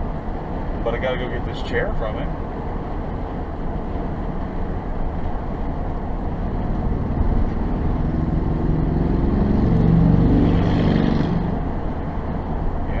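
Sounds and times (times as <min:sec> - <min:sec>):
road and tyre rumble: 0:00.0 - 0:13.0
passing vehicle engine: 0:04.9 - 0:13.0.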